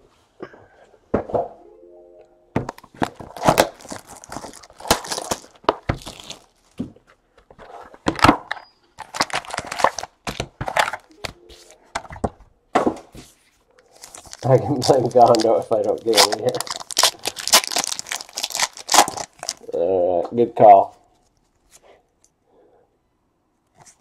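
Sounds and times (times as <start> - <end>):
cards rustling: 2.7 - 6.8, 9.0 - 12.4, 13.8 - 19.7
foil wrappers tearing and crinkling: 3.0 - 6.8, 9.0 - 11.1, 13.8 - 19.7.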